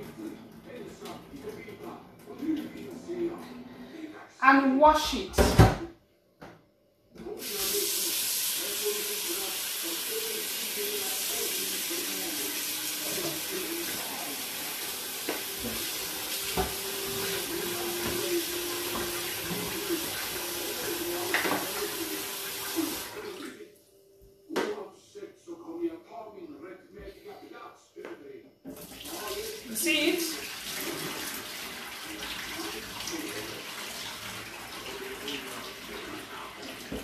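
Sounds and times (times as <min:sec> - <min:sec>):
tap running water into pot: 0:07.4 - 0:23.2, 0:30.4 - 0:37.0.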